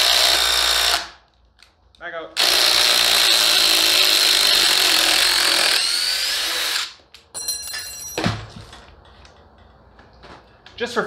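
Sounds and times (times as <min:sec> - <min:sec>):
metallic clinks ringing: 0:07.3 - 0:08.3
thud: 0:08.2 - 0:08.7.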